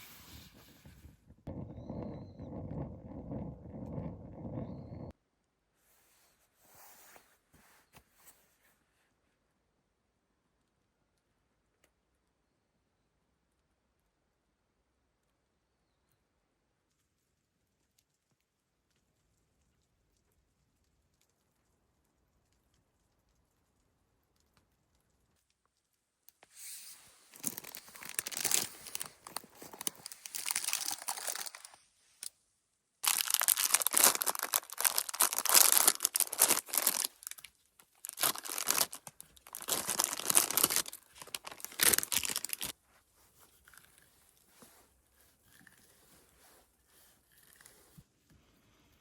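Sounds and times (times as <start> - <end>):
faint handling sounds: 5.7 - 9.6, 24.4 - 32.4, 33.0 - 49.0
crinkling and tearing: 27.2 - 32.3, 33.0 - 48.0.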